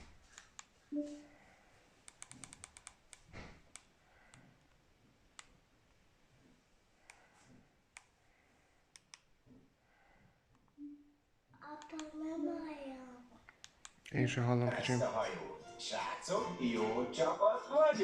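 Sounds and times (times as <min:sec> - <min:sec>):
faint sharp clicks: 0:08.9 - 0:09.3.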